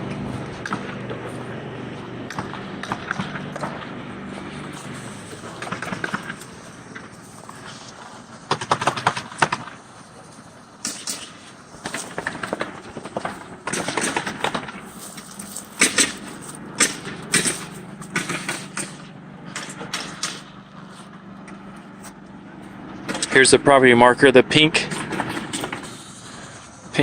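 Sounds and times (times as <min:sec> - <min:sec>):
sharp knocks and clicks: 0:10.8 - 0:20.6.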